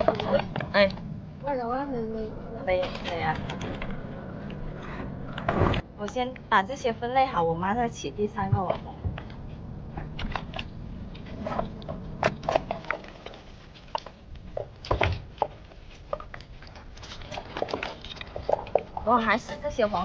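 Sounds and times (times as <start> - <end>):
crabs and shrimp clicking and rattling: 11.4 - 19.8.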